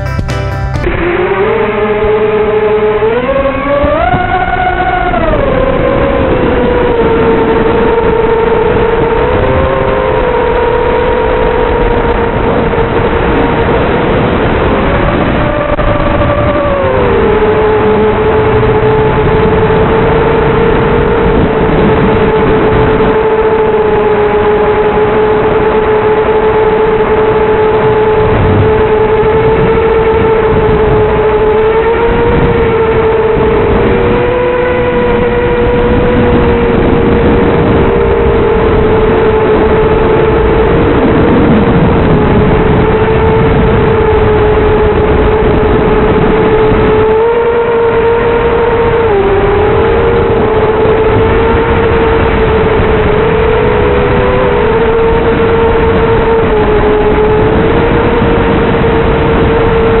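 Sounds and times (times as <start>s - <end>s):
quadcopter motors whining: 0.9s - 60.0s.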